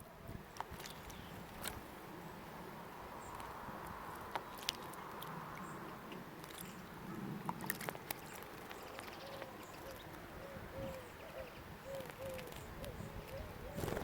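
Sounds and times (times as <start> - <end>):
faint high bird calls: 8.2 - 14.0
dove cooing: 9.2 - 14.0.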